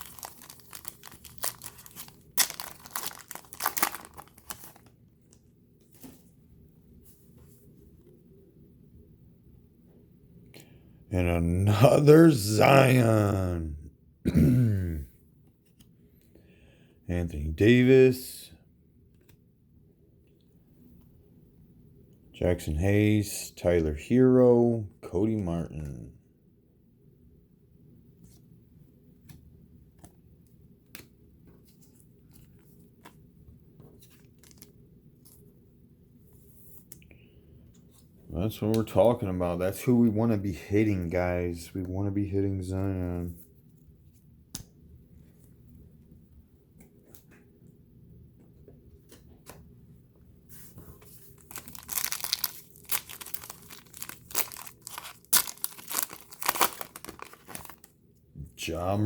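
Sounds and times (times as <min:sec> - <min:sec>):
wrapper being torn and crinkled: 0:00.0 - 0:04.9, 0:51.4 - 0:57.9
trading cards rustling: 0:00.0 - 0:05.0, 0:30.9 - 0:35.5, 0:50.6 - 0:57.9
low steady hum: 0:00.0 - 0:59.0.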